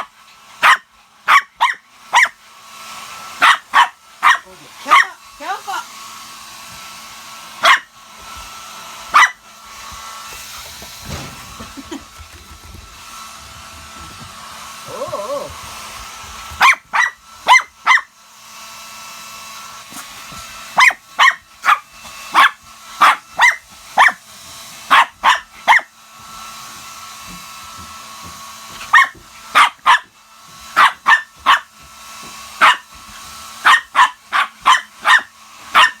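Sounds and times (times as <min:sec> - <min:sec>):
hair dryer whining hum: 0:00.0 - 0:36.0
dog barking: 0:00.6 - 0:02.4, 0:03.4 - 0:05.2, 0:07.6 - 0:07.9, 0:09.1 - 0:09.4, 0:16.6 - 0:18.1, 0:20.8 - 0:24.2, 0:24.9 - 0:25.9, 0:28.8 - 0:30.1, 0:30.8 - 0:31.7, 0:32.6 - 0:32.9, 0:33.6 - 0:36.0.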